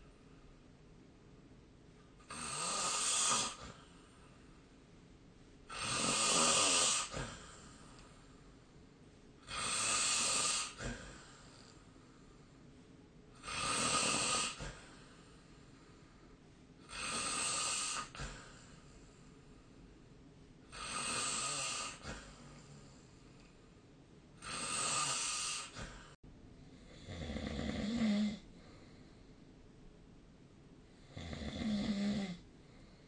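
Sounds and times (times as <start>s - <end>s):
person snoring: 2.2s - 3.9s, 5.7s - 8.1s, 9.4s - 11.8s, 13.4s - 15.1s, 16.9s - 18.6s, 20.7s - 22.5s, 24.4s - 26.2s, 26.9s - 28.5s, 31.0s - 32.4s.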